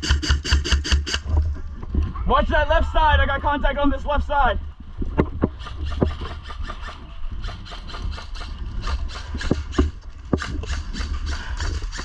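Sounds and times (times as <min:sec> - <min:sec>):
sharp clicks and knocks: 0:05.0 - 0:12.0.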